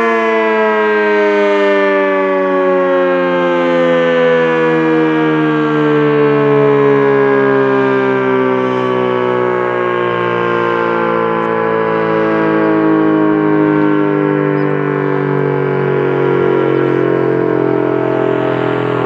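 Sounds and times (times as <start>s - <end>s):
warning siren: 0.0s - 19.0s.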